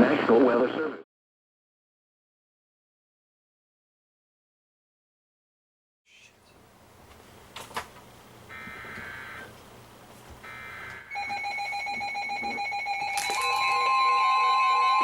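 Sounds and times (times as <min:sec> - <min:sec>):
alert radios beeping: 0:10.5 - 0:15.0.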